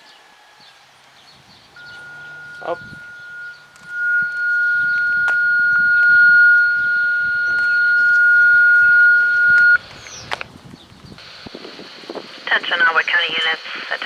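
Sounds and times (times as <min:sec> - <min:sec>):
long steady radio beep: 0:01.8 - 0:10.2, 0:12.4 - 0:14.0.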